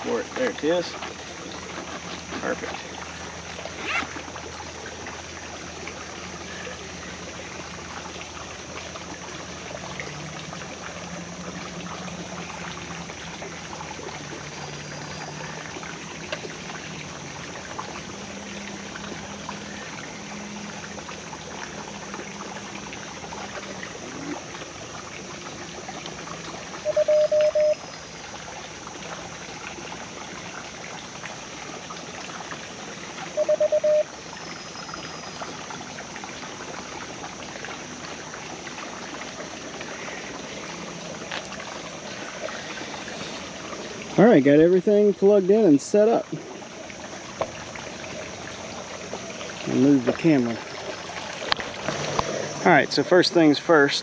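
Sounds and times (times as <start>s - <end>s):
creek trickling over rocks: 0.0s - 54.0s
morse code beeps from speaker: 26.8s - 27.8s, 33.4s - 34.1s.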